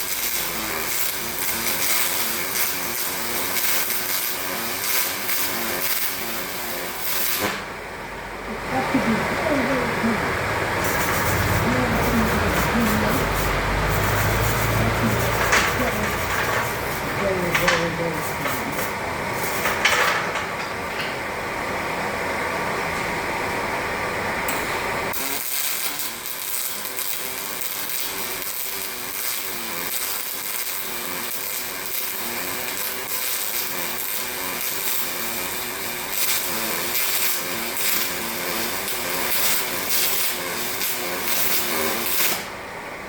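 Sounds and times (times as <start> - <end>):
welding arc crackling hiss: 0.0 - 42.9.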